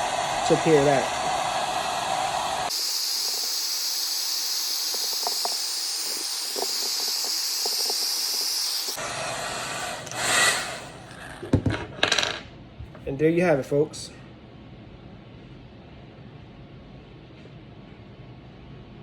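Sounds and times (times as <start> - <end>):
hot-air blower hissing: 0.0 - 11.4.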